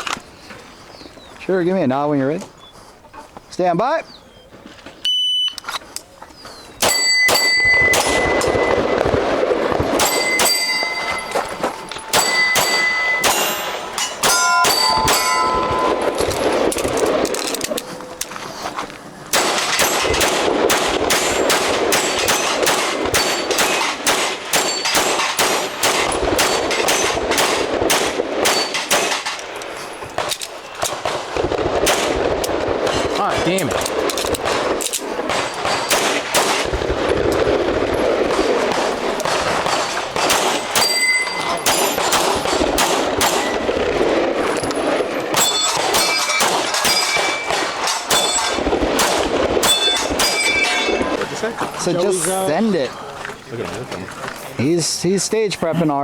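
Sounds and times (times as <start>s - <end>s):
shot timer beep: 5.0s - 5.6s
steel targets ringing: 6.8s - 9.1s, 10.0s - 17.0s, 21.2s - 27.2s, 28.4s - 29.1s, 40.6s - 42.4s, 44.8s - 48.7s, 49.6s - 51.1s
rapid pistol fire: 19.3s - 29.4s, 30.9s - 41.0s, 41.6s - 44.5s, 45.3s - 50.6s.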